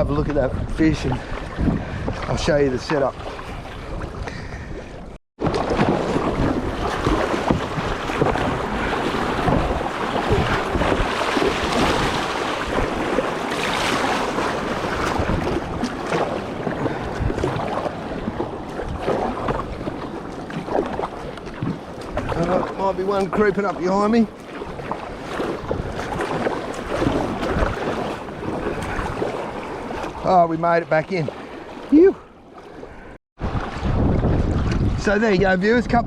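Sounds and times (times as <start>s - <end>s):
wind buffeting microphone: 0.0s - 30.3s, 33.4s - 36.0s
surf and rushing water: 0.0s - 36.0s.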